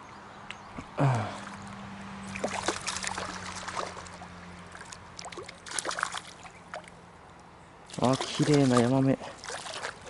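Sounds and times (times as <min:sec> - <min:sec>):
stream water trickling: 0:01.1 - 0:10.0
fish splashing at surface: 0:02.3 - 0:07.0, 0:07.9 - 0:10.0.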